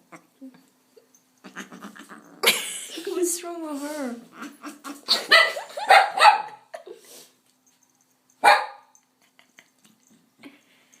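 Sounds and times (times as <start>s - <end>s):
dog making bark-like calls: 8.4s - 8.9s.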